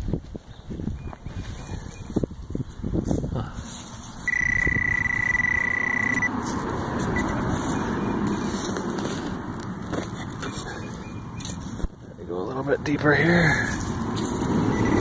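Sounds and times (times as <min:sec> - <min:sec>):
metal detector beep: 0:01.0 - 0:02.2, 0:04.2 - 0:06.3, 0:07.2 - 0:08.7, 0:10.4 - 0:11.7, 0:14.7 - 0:15.0
digging in soil: 0:01.2 - 0:11.9.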